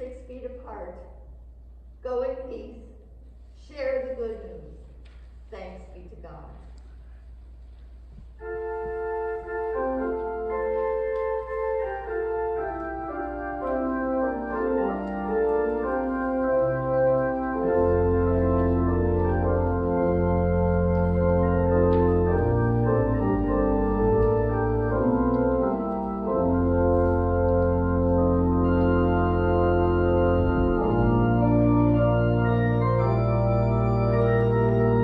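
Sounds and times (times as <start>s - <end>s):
church organ playing chords: 8.4s - 35.0s.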